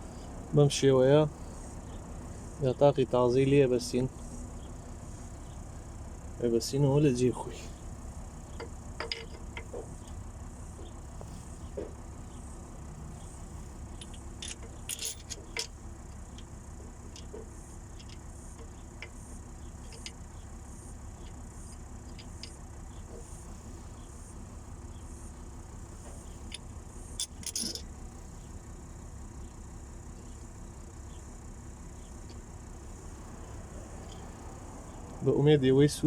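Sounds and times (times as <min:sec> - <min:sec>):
metallic tool clinks: 0:14.0 - 0:15.7, 0:27.2 - 0:27.9.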